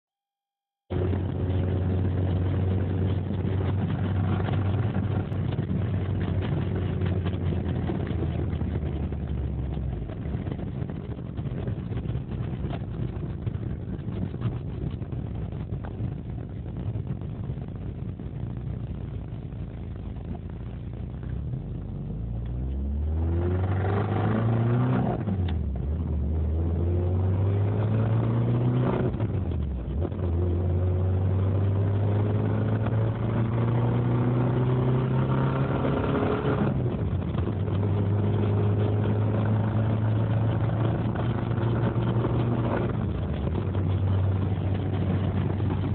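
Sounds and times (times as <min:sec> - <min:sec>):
car engine idling and revving: 0:00.7 - 0:45.9
engine knocking: 0:00.9 - 0:19.4, 0:36.9 - 0:45.9.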